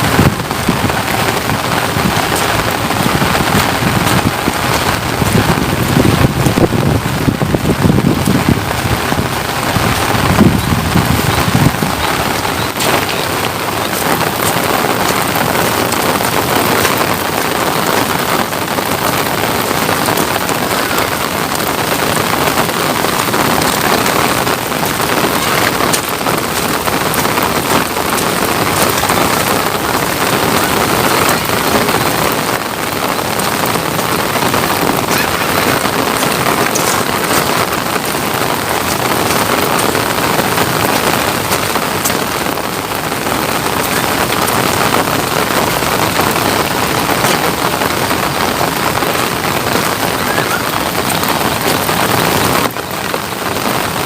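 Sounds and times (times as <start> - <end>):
steady rain falling: 0.0 - 54.0.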